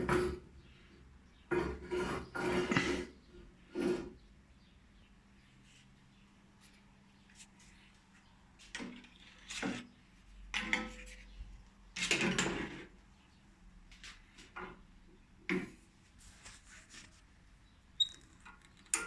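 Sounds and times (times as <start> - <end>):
clatters and scrapes: 1.4 - 4.2, 8.6 - 12.9, 15.5 - 17.3, 18.0 - 19.0.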